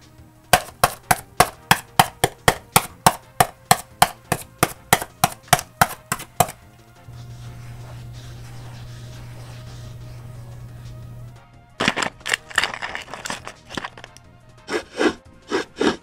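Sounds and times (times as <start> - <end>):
sharp wooden knocks: 0.6 - 6.6
low steady hum: 7.0 - 11.4.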